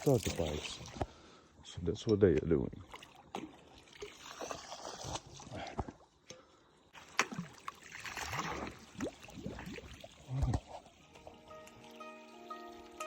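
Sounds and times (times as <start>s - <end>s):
water gurgling through pipes: 0.0s - 1.1s, 6.9s - 11.5s.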